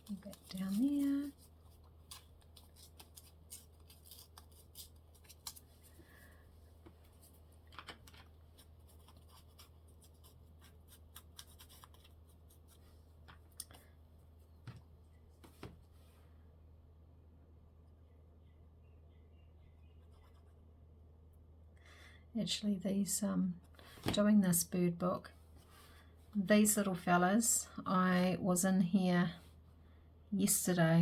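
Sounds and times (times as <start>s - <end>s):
paper rustling: 0.0s - 6.2s, 6.9s - 13.8s
low steady hum: 0.0s - 31.0s.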